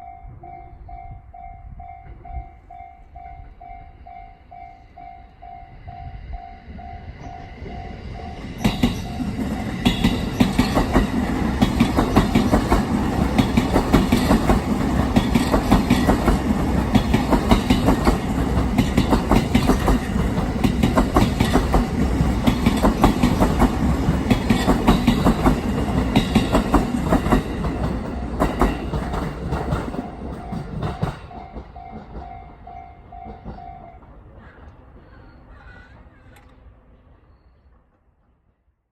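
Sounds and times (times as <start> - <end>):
train passing: 0.0 - 38.9
wheels clicking over rail joints: 8.4 - 34.9.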